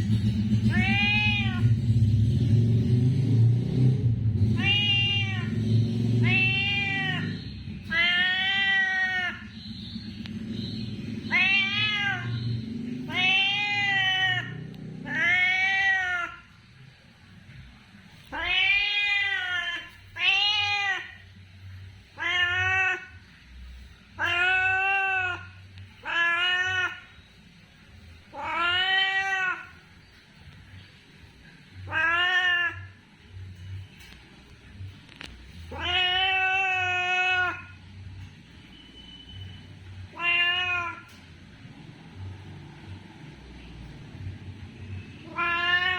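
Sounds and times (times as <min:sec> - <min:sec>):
cat meowing: 0:00.7 - 0:01.8, 0:04.5 - 0:05.6, 0:06.2 - 0:09.6, 0:11.2 - 0:12.4, 0:13.0 - 0:16.6, 0:18.3 - 0:21.4, 0:22.0 - 0:23.4, 0:24.1 - 0:27.3, 0:28.3 - 0:29.9, 0:31.8 - 0:33.1, 0:35.5 - 0:37.8, 0:40.0 - 0:41.2, 0:45.2 - 0:45.9.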